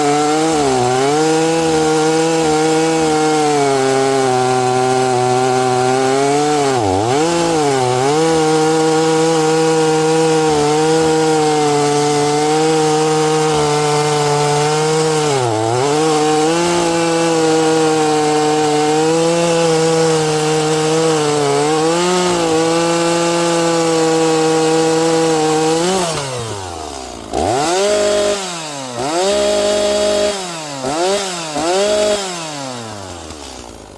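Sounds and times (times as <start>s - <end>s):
chainsaw cutting wood: 0.0s - 33.9s
chainsaw idling and revving: 0.0s - 33.9s.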